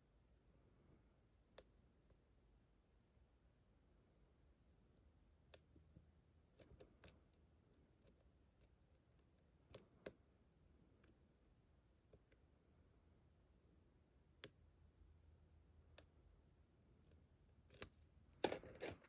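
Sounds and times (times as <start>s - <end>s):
lock pick metallic clicks: 17.7s - 19.0s.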